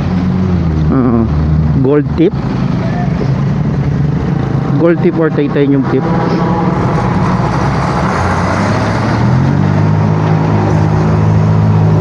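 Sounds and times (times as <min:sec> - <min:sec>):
rushing road noise: 0:00.0 - 0:12.0
vehicle engine hum: 0:00.0 - 0:12.0.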